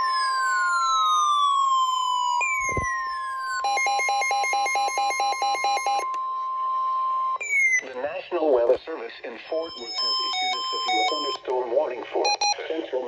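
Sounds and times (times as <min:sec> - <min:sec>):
falling electronic sweeps: 0:00.0 - 0:03.6
steady warning alarm tone: 0:00.0 - 0:11.5, 0:12.2 - 0:12.9
rapid electronic beeping: 0:02.4 - 0:11.5, 0:12.1 - 0:13.0.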